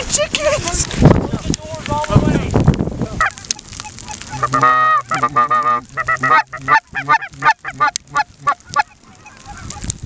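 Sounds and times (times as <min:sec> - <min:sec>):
geese honking: 0:03.2 - 0:10.0.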